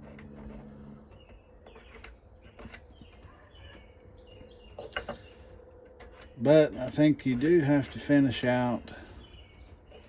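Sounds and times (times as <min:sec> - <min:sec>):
low hum: 0:00.0 - 0:01.8
faint bird chirps: 0:00.0 - 0:06.4.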